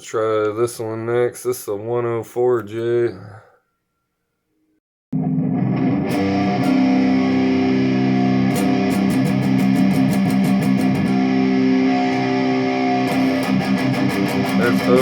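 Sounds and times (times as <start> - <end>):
electric guitar chords: 5.2 - 15.0.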